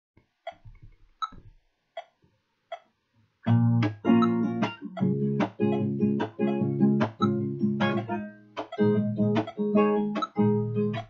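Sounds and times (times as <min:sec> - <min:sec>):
guitar strumming: 0:03.5 - 0:11.0
count-in clicks: 0:04.2 - 0:10.4.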